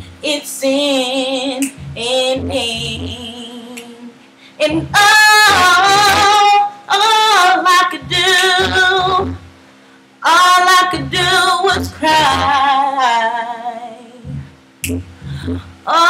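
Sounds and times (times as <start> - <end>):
woman singing soul ballad: 0.2 - 9.3, 10.2 - 14.3, 15.4 - 16.0
low backing chord: 1.8 - 3.2, 14.2 - 15.8.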